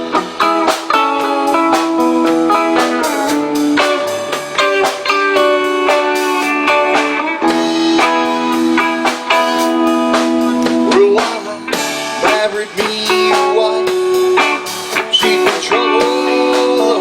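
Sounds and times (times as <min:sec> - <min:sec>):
guitar notes plucked: 0:00.0 - 0:17.0
live band playing: 0:00.0 - 0:17.0.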